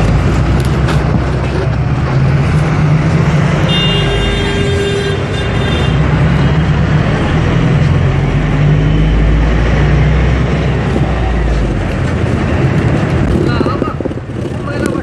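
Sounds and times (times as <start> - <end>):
road traffic: 0.0 - 15.0.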